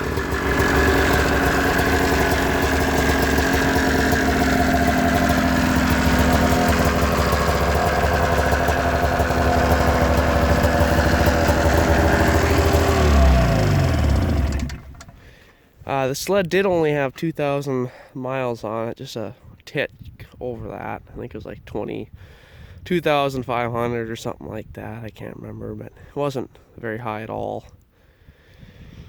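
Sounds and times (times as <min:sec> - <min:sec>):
snowmobile engine idling: 0:00.0 - 0:15.4.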